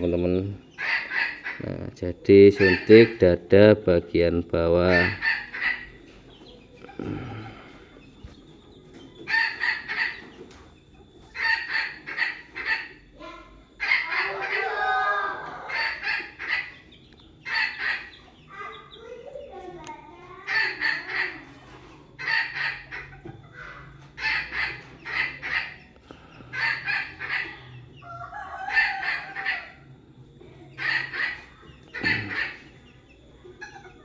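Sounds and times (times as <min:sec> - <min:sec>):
chickens clucking rapidly: 0:00.0 - 0:34.0
chicken wavering call: 0:00.8 - 0:01.9, 0:04.8 - 0:06.0, 0:09.3 - 0:10.4, 0:11.3 - 0:13.0, 0:13.8 - 0:18.7, 0:20.5 - 0:29.9, 0:30.7 - 0:32.8.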